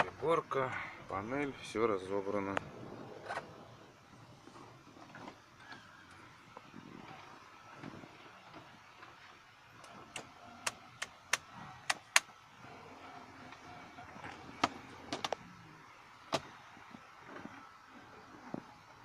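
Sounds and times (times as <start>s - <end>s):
faint background noise: 0.0s - 19.0s
sharp clicks and knocks: 9.8s - 12.3s.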